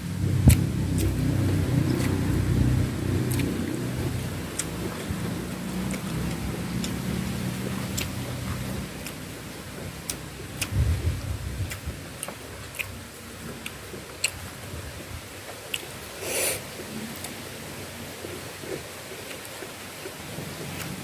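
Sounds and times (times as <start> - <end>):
low rumble: 0.0 - 12.0
sharp wet clicks: 0.4 - 2.5, 3.2 - 10.8, 11.6 - 14.5, 15.6 - 16.0, 19.2 - 21.0
chewing and mouth sounds: 0.4 - 17.4, 18.2 - 21.0
short hissing burst: 16.2 - 16.6.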